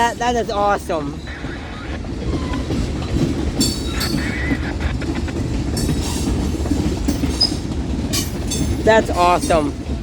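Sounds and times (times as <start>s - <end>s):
train wheels clattering on rails: 0.0s - 10.0s
wheel squeals: 7.2s - 8.4s.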